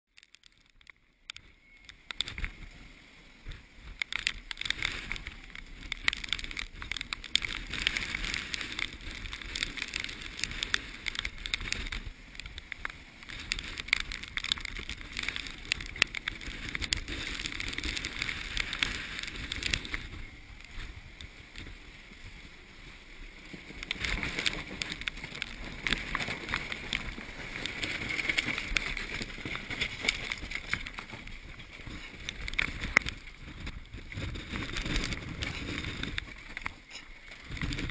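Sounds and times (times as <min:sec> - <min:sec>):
rushing water: 0:00.2 - 0:37.9
rushing wind: 0:00.4 - 0:37.9.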